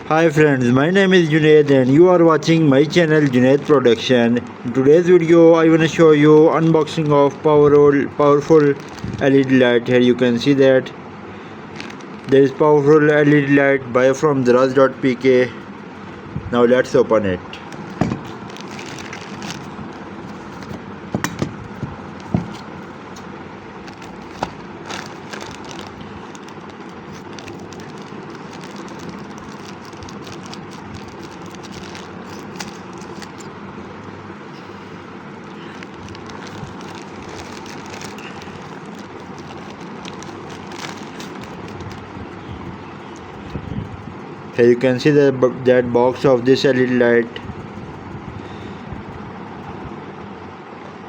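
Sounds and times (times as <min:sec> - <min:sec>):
steady background noise: 0:00.0 - 0:51.0
clicks taps and rustles: 0:17.6 - 0:33.5
cardboard box being opened: 0:23.9 - 0:33.5.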